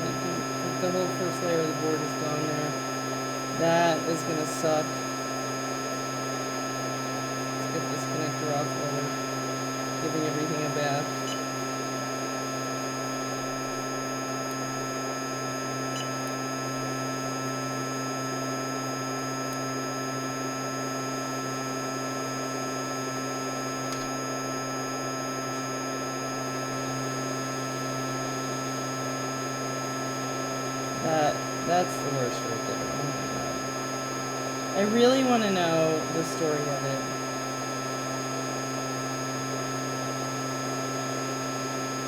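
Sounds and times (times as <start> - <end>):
electrical hum: 0.0 - 42.0.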